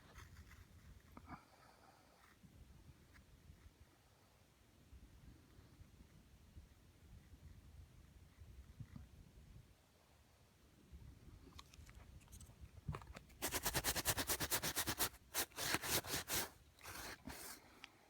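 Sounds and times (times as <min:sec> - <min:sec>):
brush scrubbing carpet: 0:13.4 - 0:17.6.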